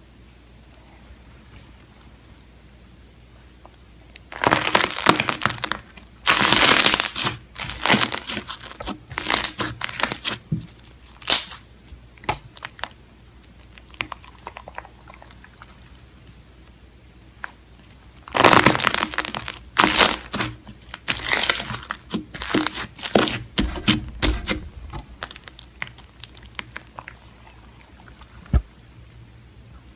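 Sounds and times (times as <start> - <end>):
slime crackling and popping: 4.2 - 16.0, 18.2 - 28.8.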